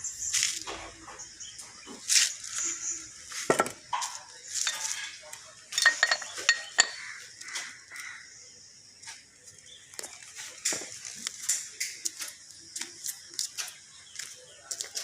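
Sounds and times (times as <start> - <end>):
metal tools clinking: 3.4 - 7.3
ringing metal clanks: 3.6 - 7.2.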